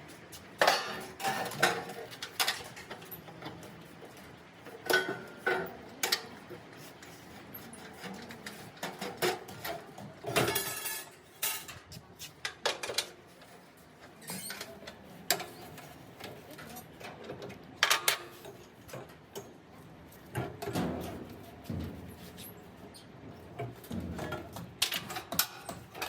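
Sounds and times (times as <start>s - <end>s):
tools clinking against metal: 10.3s - 11.8s.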